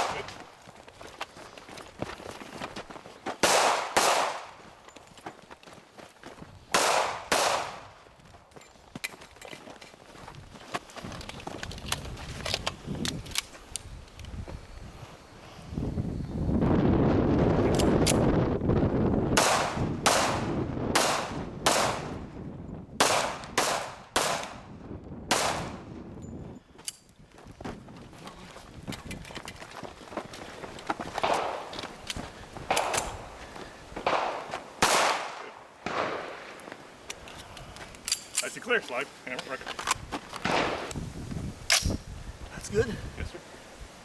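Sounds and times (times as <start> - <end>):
rifle shots with echo: 3.4 - 4.5, 6.7 - 7.8, 19.4 - 22.1, 23.0 - 24.6, 25.3 - 25.8, 31.2 - 31.7, 34.0 - 36.6, 40.4 - 40.9.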